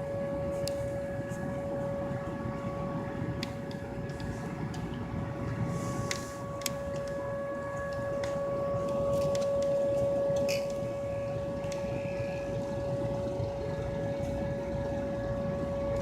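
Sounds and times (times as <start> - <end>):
warning siren steady tone: 0.0 - 16.0.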